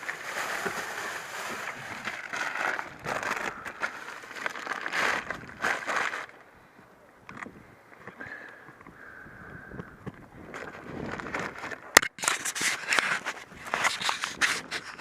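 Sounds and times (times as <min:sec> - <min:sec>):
wind buffeting microphone: 0:02.8 - 0:03.9, 0:07.2 - 0:11.7.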